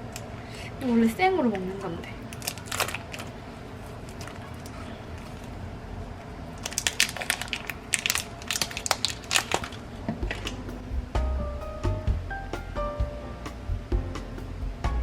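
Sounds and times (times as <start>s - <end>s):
crackling packaging clicks: 6.6s - 9.8s.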